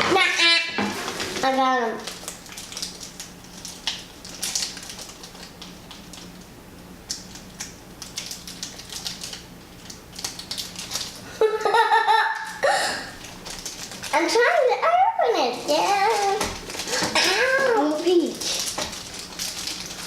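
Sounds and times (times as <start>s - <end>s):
child's voice: 0.0s - 0.8s, 1.4s - 2.1s, 14.1s - 16.5s, 17.1s - 18.6s
plastic bags crinkling: 1.0s - 6.5s, 7.1s - 11.4s, 12.3s - 20.0s.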